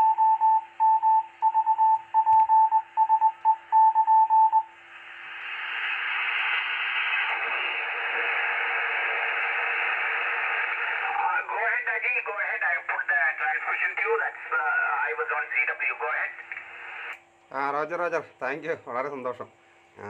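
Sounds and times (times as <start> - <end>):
morse code beeps: 0.0 - 4.7
radio static hiss: 4.8 - 19.5.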